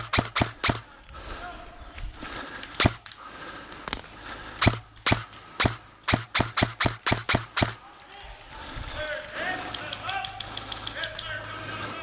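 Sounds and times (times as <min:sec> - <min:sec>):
airsoft gun shots: 0:00.0 - 0:00.9, 0:02.8 - 0:03.1, 0:04.6 - 0:07.8.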